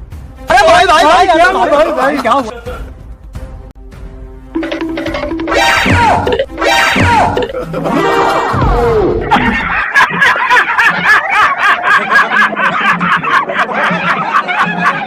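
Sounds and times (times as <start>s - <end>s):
person laughing: 7.2s - 8.6s, 9.2s - 15.0s.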